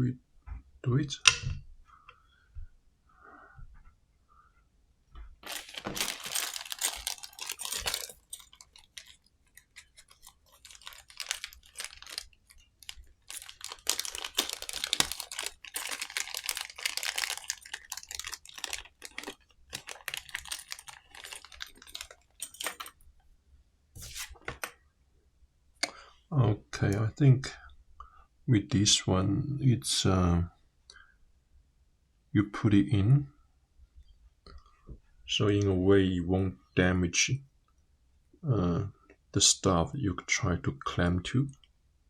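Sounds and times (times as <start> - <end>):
plastic packaging crinkling: 5.4 - 23.0, 24.0 - 24.7.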